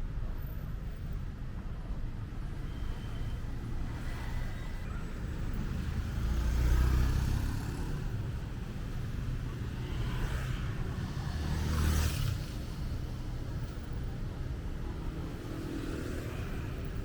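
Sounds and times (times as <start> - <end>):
motor vehicles passing: 3.7 - 17.0.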